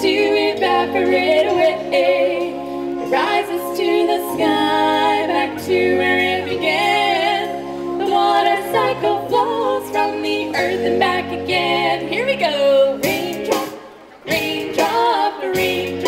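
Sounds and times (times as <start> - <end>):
musical accompaniment: 0.0 - 16.0
women singing a children's song: 0.0 - 16.0.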